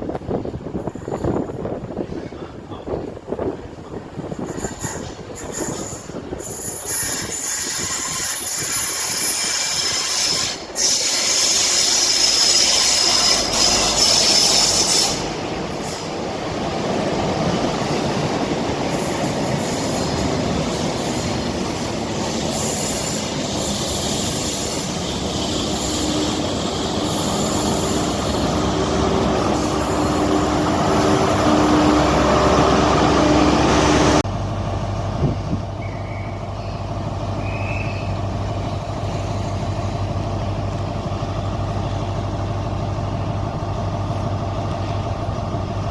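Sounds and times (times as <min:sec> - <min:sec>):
train running on rails: 0:00.0 - 0:45.9
wheel squeal: 0:04.4 - 0:16.1.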